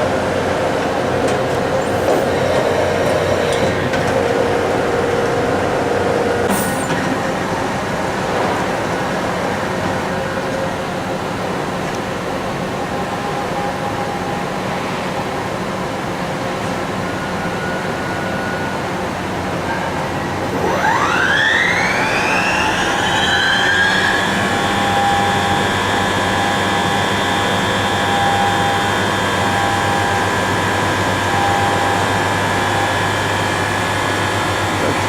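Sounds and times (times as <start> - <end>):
boring mill spindle whine: 16.8 - 35.0.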